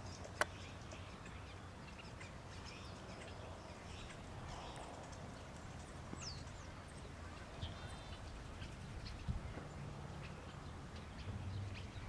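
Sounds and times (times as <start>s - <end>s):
birds chirping and calling: 0.0s - 12.0s.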